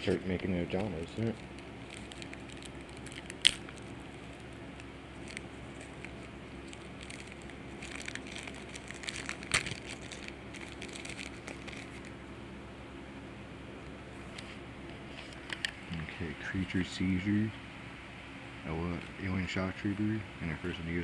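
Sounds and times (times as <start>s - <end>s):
foil wrapper crinkling: 0.0s - 12.2s.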